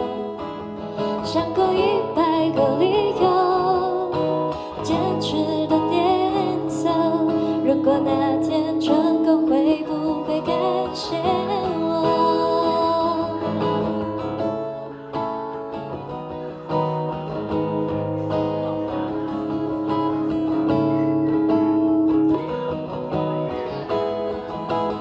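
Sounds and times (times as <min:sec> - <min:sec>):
strummed guitar chords: 0:00.0 - 0:25.0.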